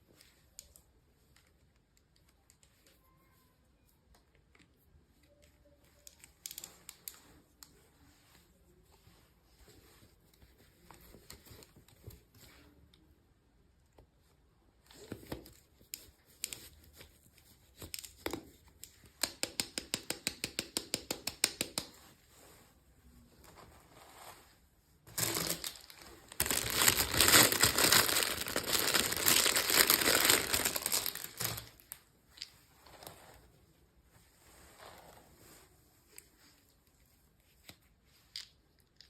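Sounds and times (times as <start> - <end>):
plastic wrapper crinkling: 25.1 - 32.0.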